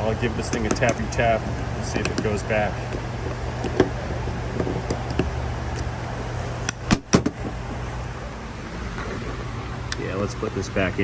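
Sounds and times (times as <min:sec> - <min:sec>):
steady low hum: 0:00.0 - 0:11.0
tools clicking and knocking: 0:00.4 - 0:01.1, 0:01.9 - 0:05.9.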